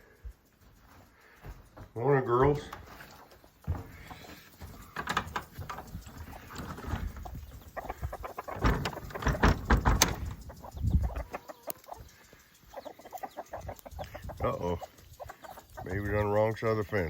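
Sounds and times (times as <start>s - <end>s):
knocks and scuffing: 0.6s - 7.2s
hens clucking: 0.7s - 17.0s.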